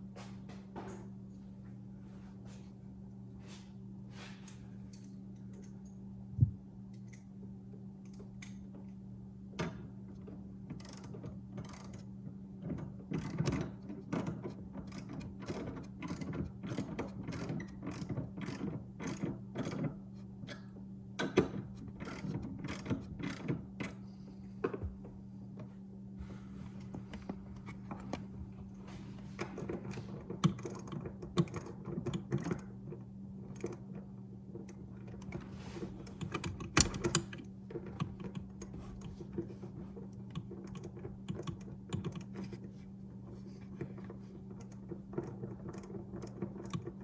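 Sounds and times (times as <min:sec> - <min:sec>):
steady low hum: 0:00.0 - 0:47.0
ratchet wrench clicking: 0:10.8 - 0:12.0, 0:30.5 - 0:32.6.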